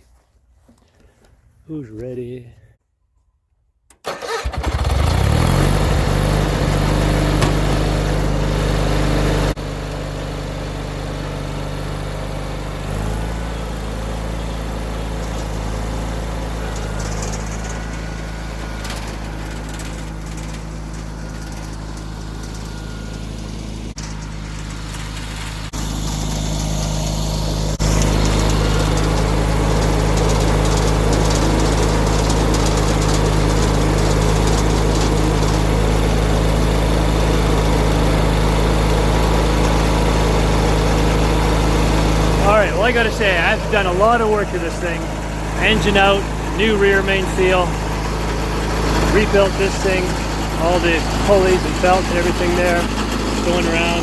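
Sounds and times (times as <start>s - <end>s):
garden tractor engine running: 4.0s - 54.0s.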